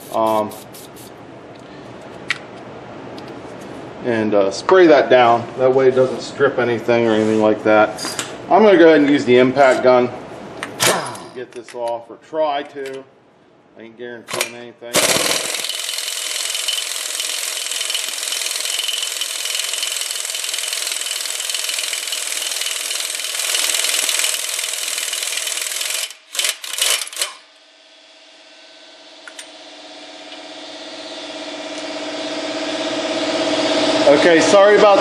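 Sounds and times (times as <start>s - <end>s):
air compressor running: 0.0s - 2.3s, 14.3s - 35.0s
air impact wrench hammering: 14.3s - 27.5s.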